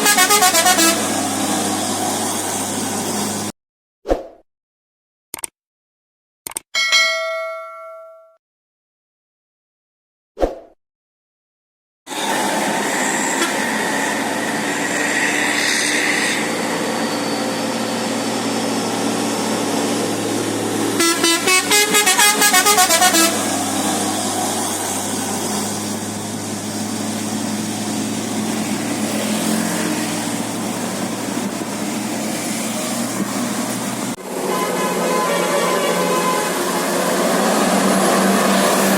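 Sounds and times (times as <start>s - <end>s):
multi-tone musical horn: 0.0s - 1.2s, 21.0s - 23.6s, 34.2s - 37.0s
bus engine humming: 0.0s - 3.5s, 12.1s - 38.9s.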